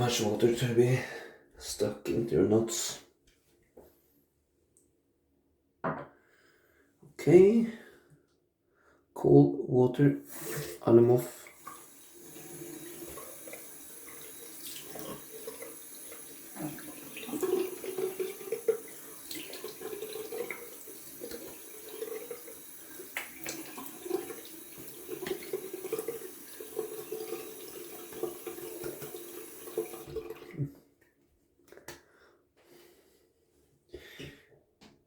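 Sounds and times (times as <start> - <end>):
tap water running into sink: 10.3 - 30.7
water splashing on face: 12.7 - 26.2.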